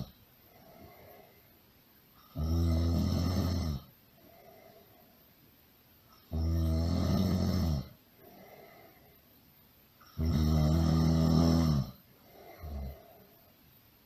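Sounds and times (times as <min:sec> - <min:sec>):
loud snoring: 0:02.3 - 0:03.9, 0:06.3 - 0:08.0, 0:10.1 - 0:13.2.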